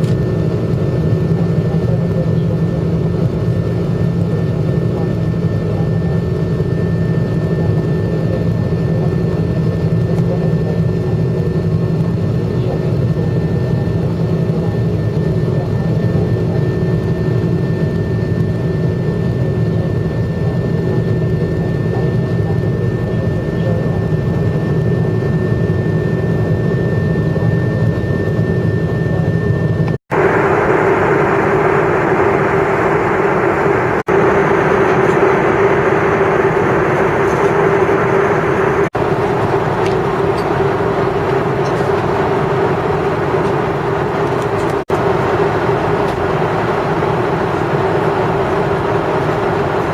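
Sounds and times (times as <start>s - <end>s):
airliner cabin engine rumble: 0.0s - 49.9s
thin steady whine: 0.0s - 49.9s.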